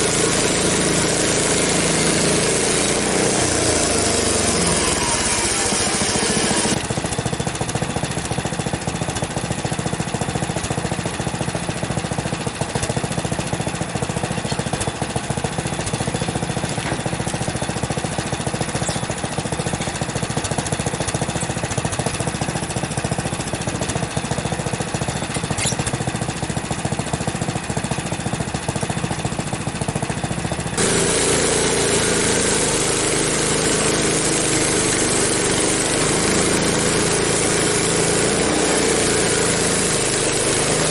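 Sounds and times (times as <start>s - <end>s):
bandsaw sawing through log: 0.0s - 8.4s, 14.0s - 26.6s, 30.8s - 40.9s
gas engine running: 0.0s - 40.9s.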